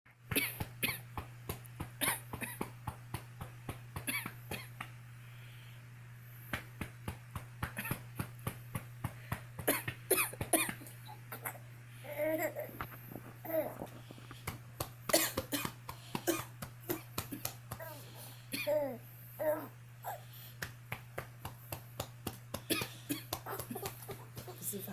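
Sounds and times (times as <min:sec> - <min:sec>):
baby giggling: 0:11.1 - 0:12.8, 0:22.7 - 0:24.6
woman coughing: 0:15.1 - 0:17.1.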